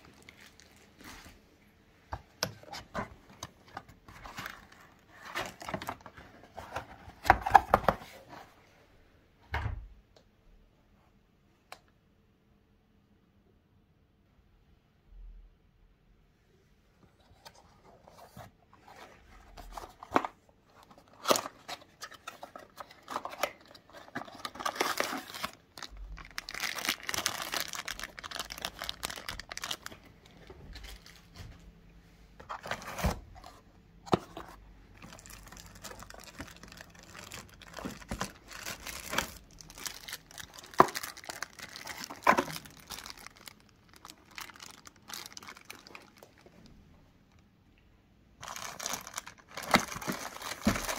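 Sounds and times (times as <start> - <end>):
packaging crinkling and tearing: 0.0 - 1.4, 2.6 - 7.8, 19.6 - 31.4, 35.0 - 46.5, 48.4 - 50.9.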